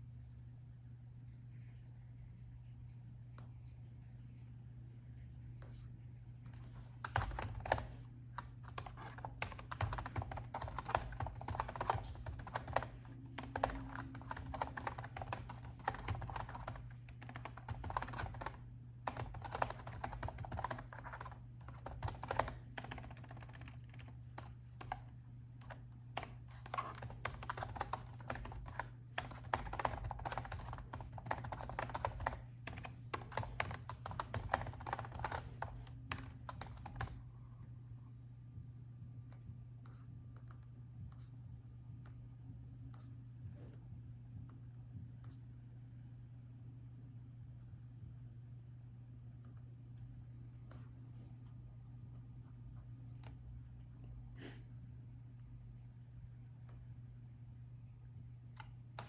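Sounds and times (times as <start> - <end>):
steady low hum: 0.0 - 59.0
laptop keyboard typing: 7.0 - 37.2.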